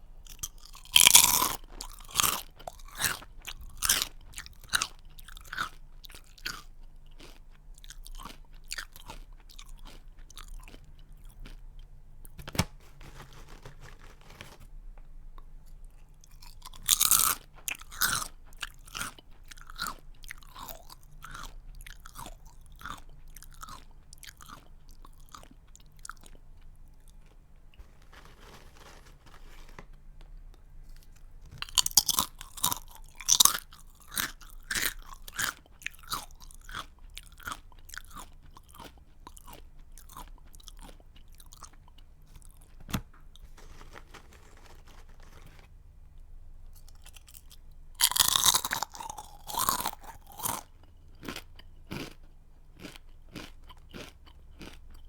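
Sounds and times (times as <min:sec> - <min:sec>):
crunching chews: 0:00.2 - 0:11.9, 0:15.4 - 0:45.7, 0:46.7 - 0:55.0
person biting crunchy snack: 0:00.3 - 0:05.8, 0:16.3 - 0:20.0, 0:31.0 - 0:41.7, 0:47.0 - 0:52.2.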